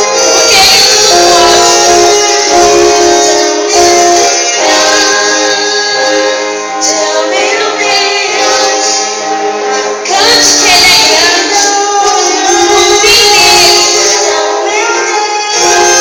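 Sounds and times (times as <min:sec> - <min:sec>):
band music with singing: 0:00.0 - 0:16.0.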